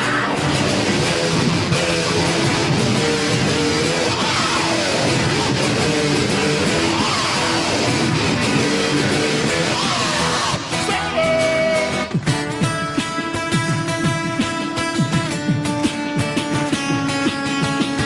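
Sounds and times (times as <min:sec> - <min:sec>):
voice imitating distorted guitar: 0:00.0 - 0:18.0.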